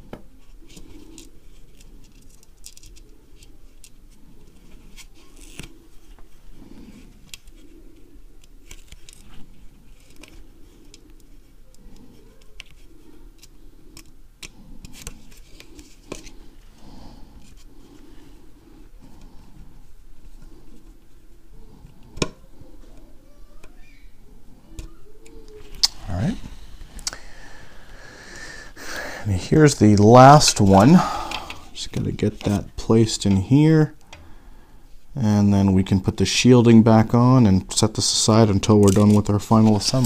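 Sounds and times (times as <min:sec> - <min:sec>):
soft handling rubs: 0:00.4 - 0:27.0.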